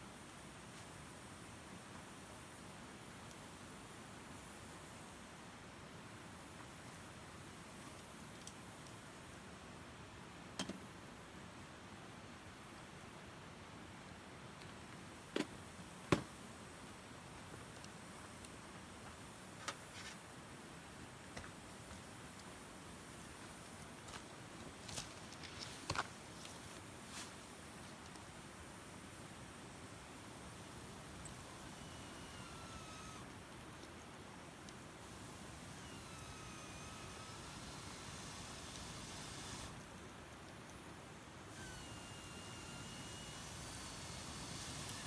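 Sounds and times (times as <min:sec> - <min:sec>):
faint steady hiss: 0:00.0 - 0:45.0.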